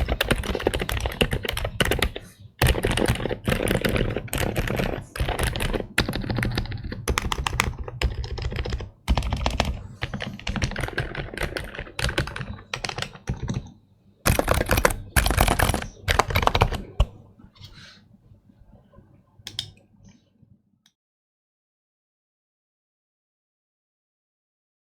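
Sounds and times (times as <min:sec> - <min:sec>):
mechanical keyboard typing: 0:00.0 - 0:17.2.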